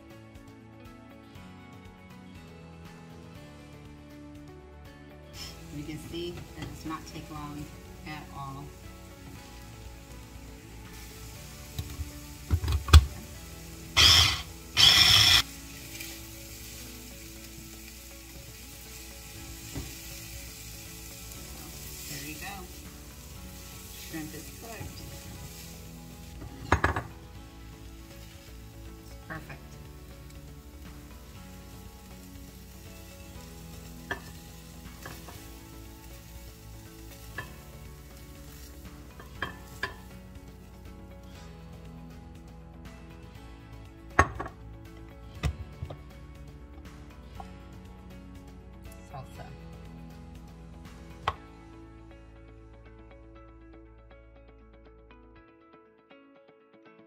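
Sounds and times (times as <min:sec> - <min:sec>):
soft background music: 0:00.0 - 0:57.0
shrimp sizzling in a pan: 0:05.4 - 0:41.9
loud hissing bursts: 0:13.9 - 0:15.5
utensil knocking against pan: 0:26.6 - 0:27.2.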